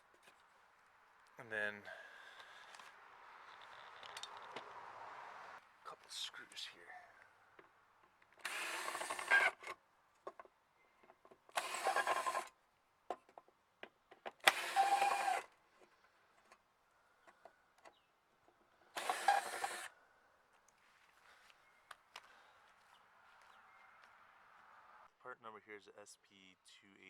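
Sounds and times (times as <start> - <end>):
electric screwdriver whirring: 8.4 - 9.7, 11.5 - 12.5, 14.4 - 15.5, 19.0 - 19.9.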